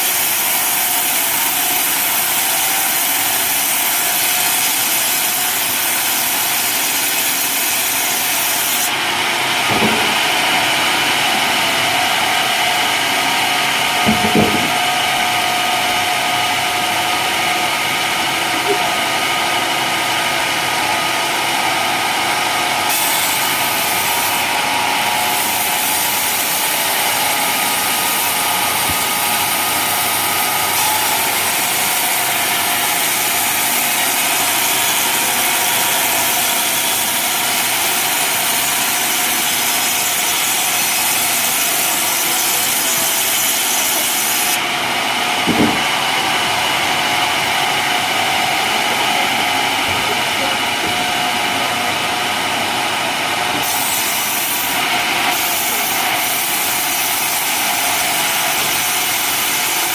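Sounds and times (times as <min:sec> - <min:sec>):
saw blade cutting wood: 0:00.0 - 0:15.2, 0:22.8 - 0:44.7, 0:53.5 - 0:59.9
sawmill motor running: 0:00.0 - 0:59.9
brief knock: 0:09.7 - 0:10.3, 0:14.1 - 0:14.9, 0:45.5 - 0:45.9.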